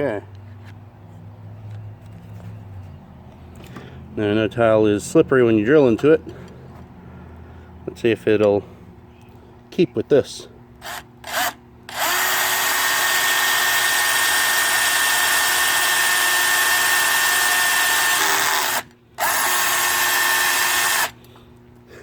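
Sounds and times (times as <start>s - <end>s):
electric drill whining: 10.8s - 21.2s.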